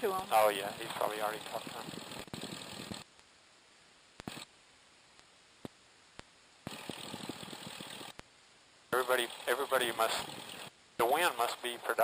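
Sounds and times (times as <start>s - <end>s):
aircraft engine noise: 0.0s - 3.0s, 6.7s - 8.2s, 9.0s - 12.0s.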